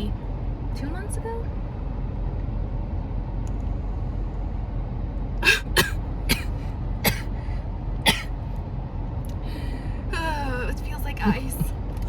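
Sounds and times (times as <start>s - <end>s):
low hum: 0.0s - 12.0s
person coughing: 5.4s - 7.3s, 8.1s - 8.3s.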